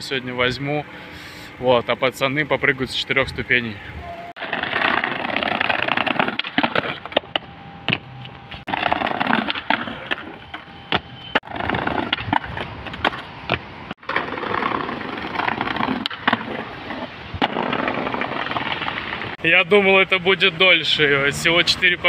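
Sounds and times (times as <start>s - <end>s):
skateboard wheels rolling on pavement: 4.1s - 22.0s
skateboard clacking down: 4.4s - 7.4s, 8.7s - 19.4s.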